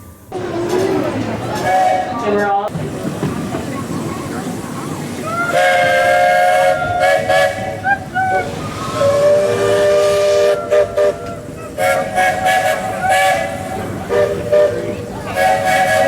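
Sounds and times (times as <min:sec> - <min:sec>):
steam locomotive whistle blasts: 0:01.6 - 0:02.2, 0:05.4 - 0:16.0.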